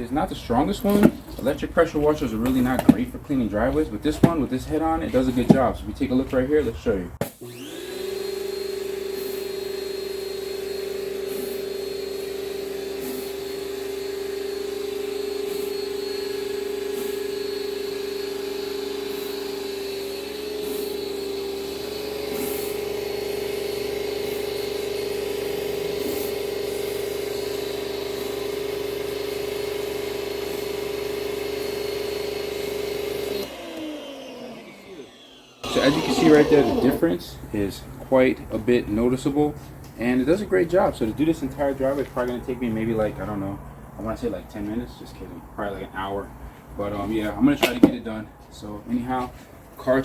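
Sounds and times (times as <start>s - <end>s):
pressure washer humming: 7.3s - 37.5s.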